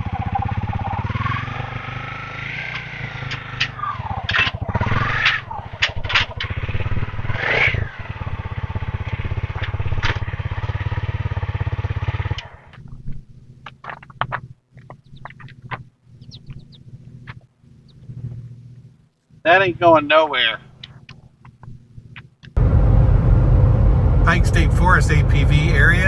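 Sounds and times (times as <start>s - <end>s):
motorcycle engine idling and revving: 0.0s - 12.8s.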